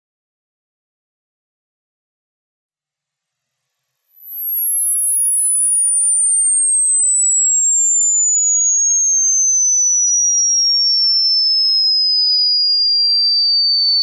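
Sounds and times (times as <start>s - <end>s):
descending electronic sine tone: 2.8s - 14.0s.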